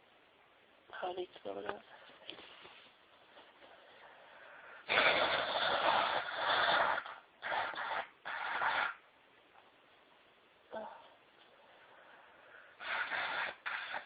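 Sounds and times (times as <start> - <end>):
nose blowing into tissue: 4.8 - 9.0, 12.8 - 14.0.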